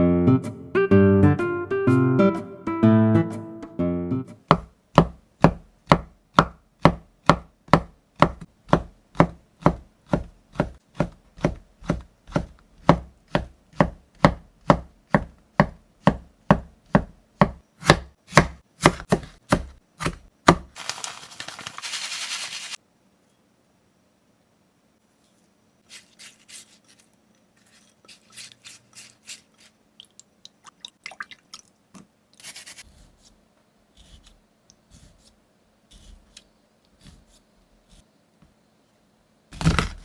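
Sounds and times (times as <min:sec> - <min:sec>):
knife chopping on cutting board: 0:04.5 - 0:20.7, 0:39.6 - 0:40.0.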